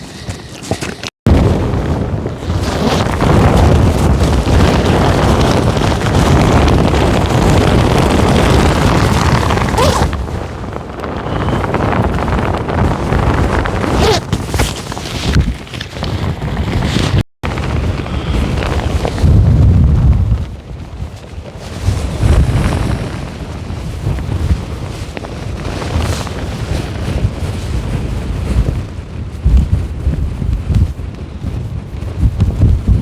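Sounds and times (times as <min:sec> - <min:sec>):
gusting wind buffeting microphone: 0:00.0 - 0:33.0.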